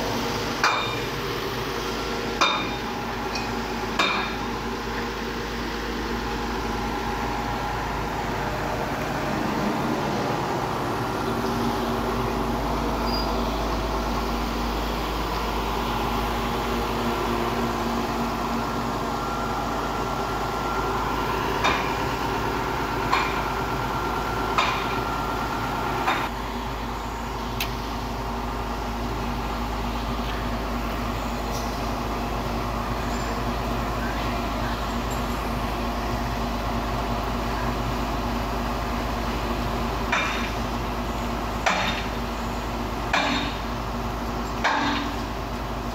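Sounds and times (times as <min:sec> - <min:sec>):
excavator diesel engine running: 0:00.0 - 0:45.9
sharp metallic knocks: 0:00.6 - 0:01.1, 0:02.4 - 0:04.4, 0:40.1 - 0:40.6, 0:41.6 - 0:42.1, 0:43.1 - 0:43.6, 0:44.6 - 0:45.2.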